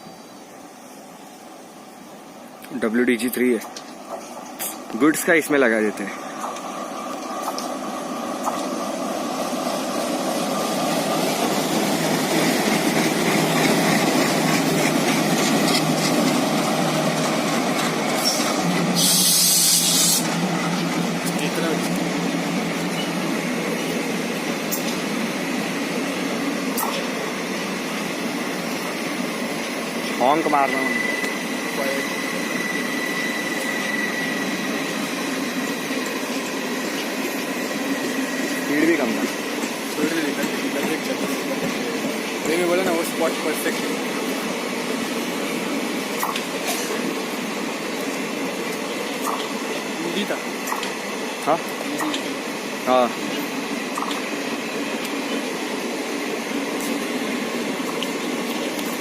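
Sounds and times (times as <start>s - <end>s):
passing train rolling: 0.0s - 59.0s
diesel locomotive engine running: 0.4s - 59.0s
thin high whine: 30.4s - 34.8s.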